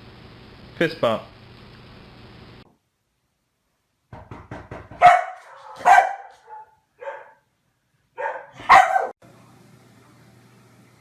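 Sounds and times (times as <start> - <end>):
dog barking: 5.0 - 7.4, 8.2 - 9.2.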